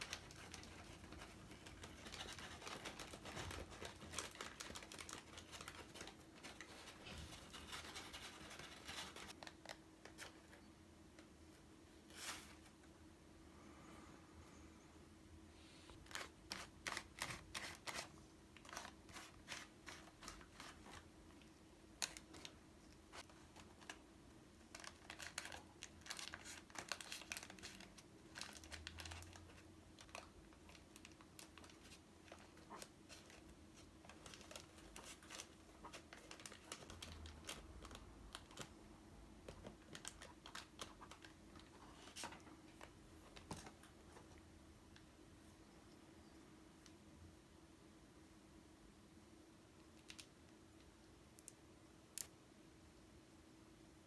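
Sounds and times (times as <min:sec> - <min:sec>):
paper rustling and crinkling: 0:00.0 - 0:10.6, 0:15.9 - 0:21.1, 0:24.7 - 0:38.8, 0:39.4 - 0:44.4
low steady hum: 0:00.0 - 0:54.0.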